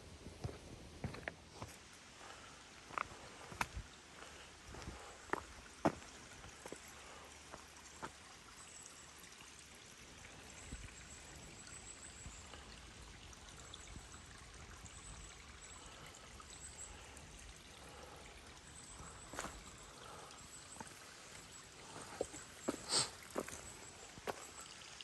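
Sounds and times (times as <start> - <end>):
faint stream flowing: 0.0 - 25.0.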